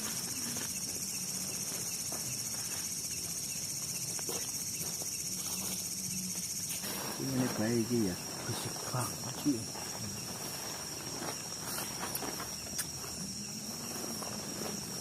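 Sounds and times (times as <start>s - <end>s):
night insects shrilling: 0.0s - 15.0s.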